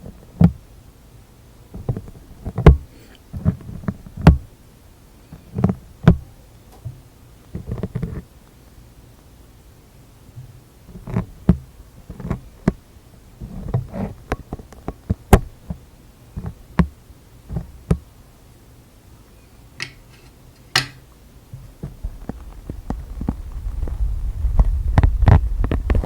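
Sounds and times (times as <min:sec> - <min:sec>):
crackly rustles: 0:21.5 - 0:26.0.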